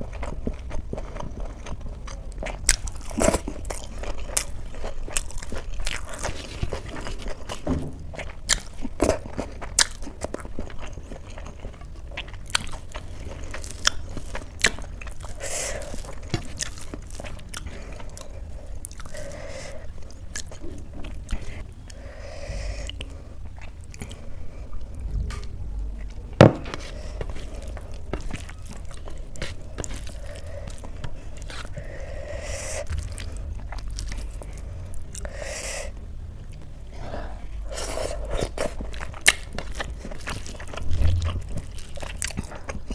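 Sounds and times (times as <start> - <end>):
person chewing and biting food: 0.0 - 35.9, 36.5 - 42.9.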